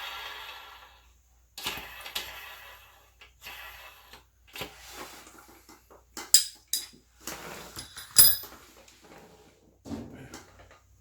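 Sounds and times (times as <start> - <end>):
sharp metallic clinks: 6.4 - 6.9, 7.8 - 8.5.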